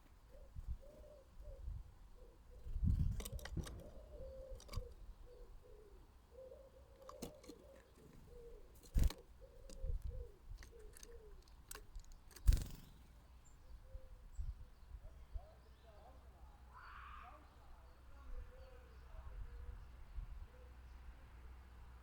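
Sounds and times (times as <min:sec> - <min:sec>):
pigeon cooing: 0:00.0 - 0:13.0.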